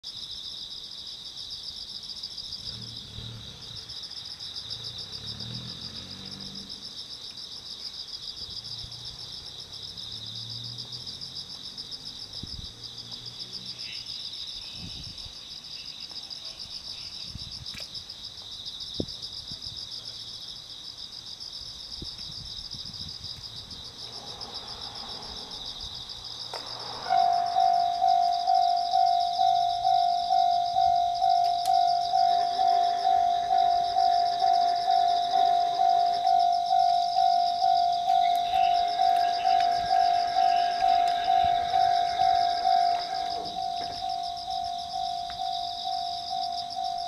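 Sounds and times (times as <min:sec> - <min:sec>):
crickets chirping: 0:00.0 - 0:47.0.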